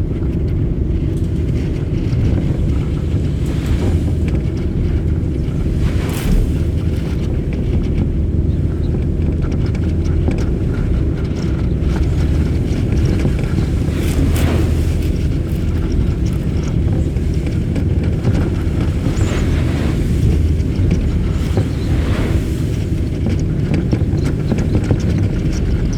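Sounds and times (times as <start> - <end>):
ferry engine droning: 0.0 - 25.9
wind noise on microphone: 0.0 - 25.9
wind rushing: 1.6 - 9.0, 11.4 - 25.9
hissing surge: 12.8 - 17.7, 18.3 - 24.6.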